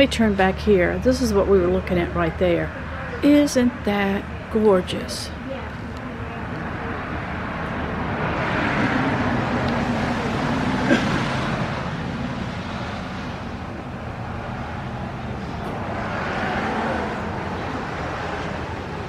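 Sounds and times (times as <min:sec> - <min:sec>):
steady traffic hum: 0:00.0 - 0:19.0
vehicle passing: 0:00.0 - 0:19.0.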